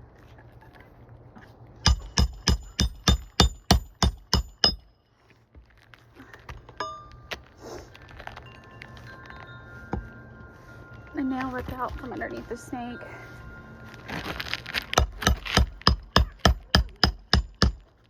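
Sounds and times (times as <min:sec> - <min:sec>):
hammer striking nail: 0:01.9 - 0:04.9, 0:15.0 - 0:17.8
ringing metal clink: 0:06.8 - 0:07.4.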